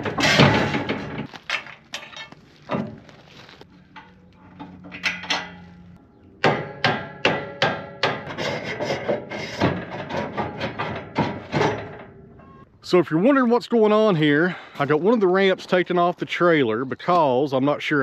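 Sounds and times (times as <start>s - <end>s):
metal clanks and knocks: 0.0s - 3.0s, 3.8s - 12.6s.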